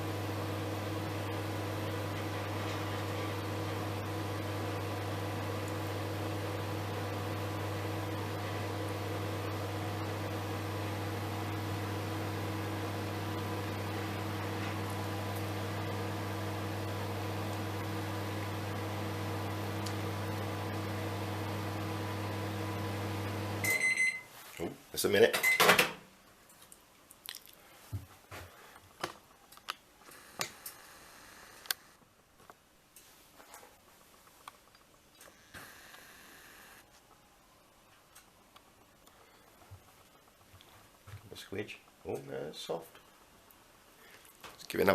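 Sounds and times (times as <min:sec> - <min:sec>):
microwave oven humming: 0:00.0 - 0:24.3, 0:35.2 - 0:36.8.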